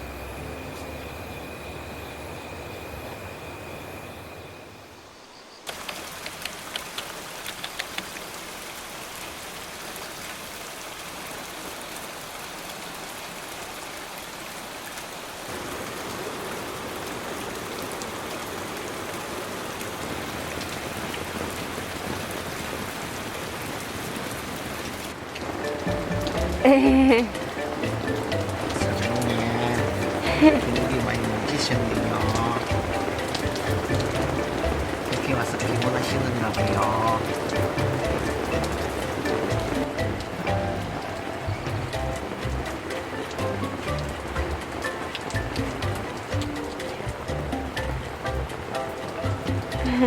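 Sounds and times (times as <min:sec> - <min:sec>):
steady hum: 0:00.0 - 0:05.3, 0:25.8 - 0:44.8
steady rain: 0:00.0 - 0:50.0.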